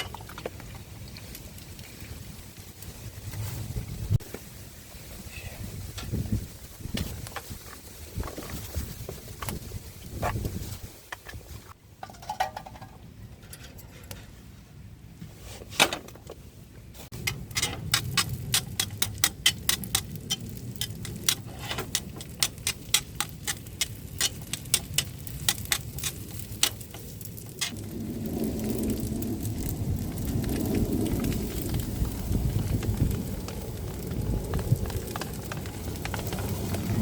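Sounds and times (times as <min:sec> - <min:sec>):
raindrops tapping on surface: 0:17.9 - 0:37.0
low rumble: 0:26.9 - 0:37.0.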